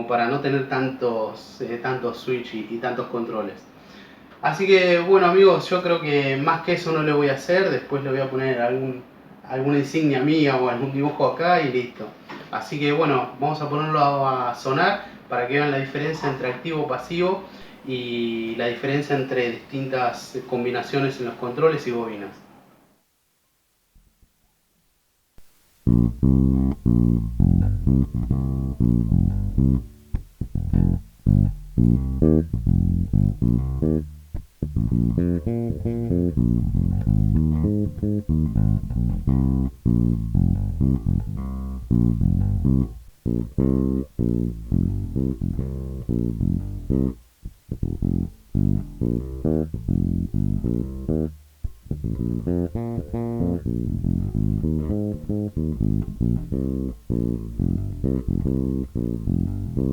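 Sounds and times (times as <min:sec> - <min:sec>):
electric bass plucked notes: 0:25.4 - 0:59.9.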